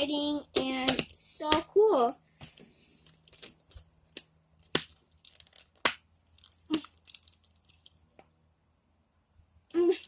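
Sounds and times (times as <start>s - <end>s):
sharp plastic snaps: 0.5s - 1.7s
plastic packaging crinkling: 2.9s - 8.2s.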